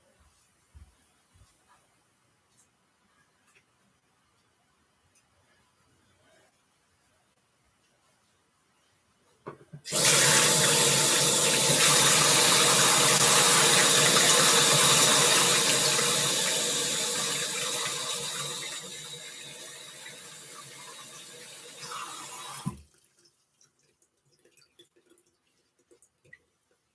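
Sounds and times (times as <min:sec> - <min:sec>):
tap running into sink: 0:21.8 - 0:22.8
tap shutting off: 0:22.5 - 0:22.8.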